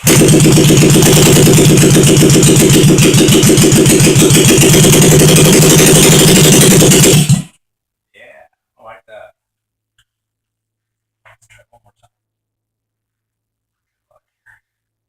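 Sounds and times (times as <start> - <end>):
motorcycle engine running: 0.0 - 7.6.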